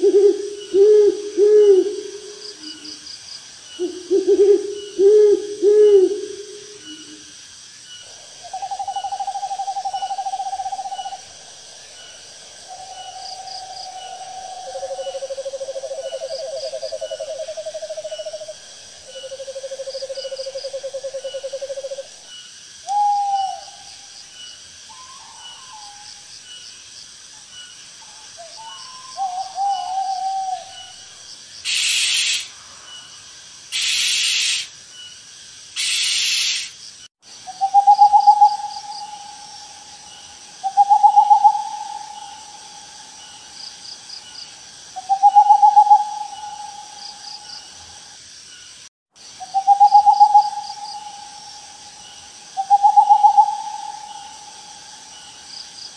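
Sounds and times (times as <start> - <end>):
owl calls: 22.9 - 23.8, 28.4 - 31.0, 31.6 - 32.5, 33.7 - 34.7, 35.8 - 36.7, 37.5 - 39.5, 49.4 - 51.3, 52.6 - 54.4
owl hissing screeches: 31.6 - 32.6, 33.7 - 34.7, 35.8 - 36.8.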